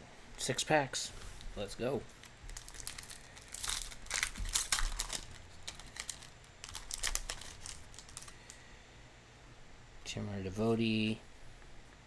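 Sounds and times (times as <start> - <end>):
plastic wrapper tearing and crinkling: 2.2 - 8.6.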